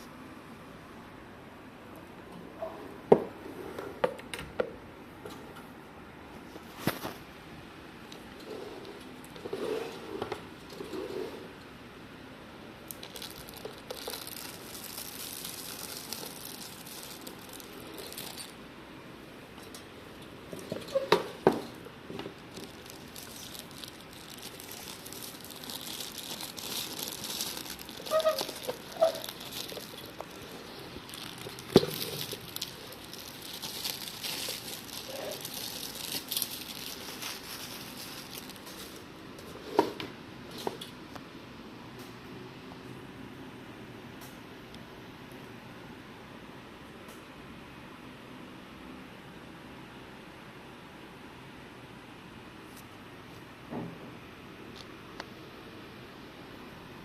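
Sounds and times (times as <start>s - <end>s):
packaging crinkling and rustling: 12.9s - 18.6s, 20.5s - 40.8s.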